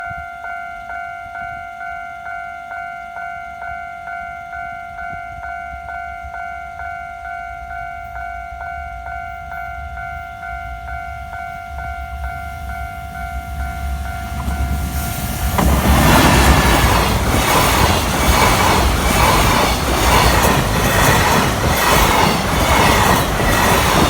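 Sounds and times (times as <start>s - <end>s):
low train rumble: 0.0s - 24.0s
level-crossing alarm ringing: 0.1s - 24.0s.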